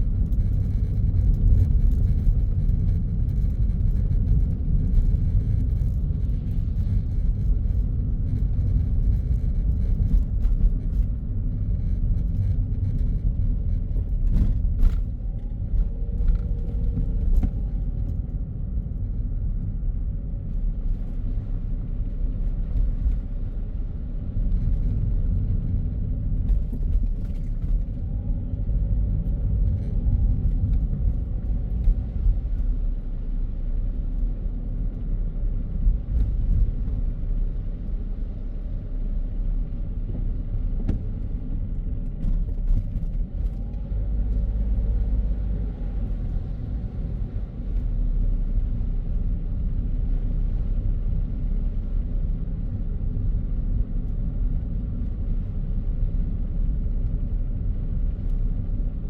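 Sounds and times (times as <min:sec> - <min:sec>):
car engine and tyre rumble: 0:00.0 - 0:59.0.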